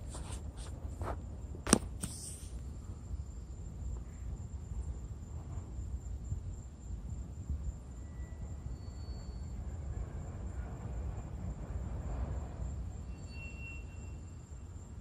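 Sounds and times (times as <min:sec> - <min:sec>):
crickets droning: 0:00.0 - 0:15.0
faint whistle-like tones: 0:07.8 - 0:11.2, 0:12.0 - 0:15.0.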